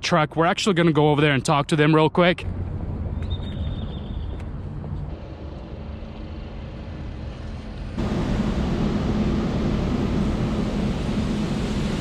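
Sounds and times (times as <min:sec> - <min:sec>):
vehicle engine rumble: 0:02.4 - 0:12.0.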